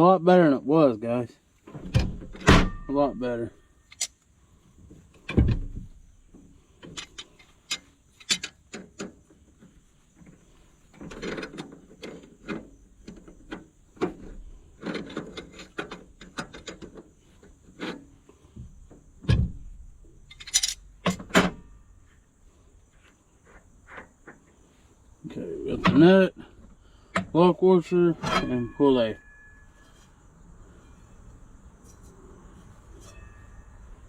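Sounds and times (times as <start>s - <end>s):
metal hardware clinking: 2.0s - 4.2s, 6.8s - 18.1s, 19.3s - 22.0s, 28.1s - 34.0s
metal rasping scrape: 28.2s - 33.8s.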